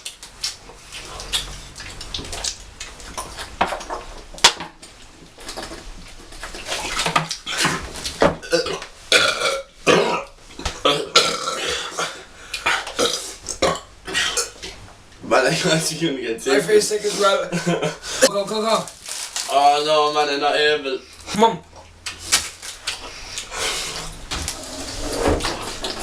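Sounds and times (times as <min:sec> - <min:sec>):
men burping loudly: 0:08.4 - 0:14.6.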